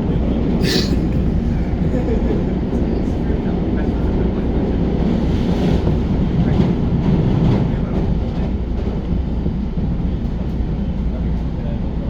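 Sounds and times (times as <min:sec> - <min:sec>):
train wheels rumbling on rails: 0:00.0 - 0:12.0.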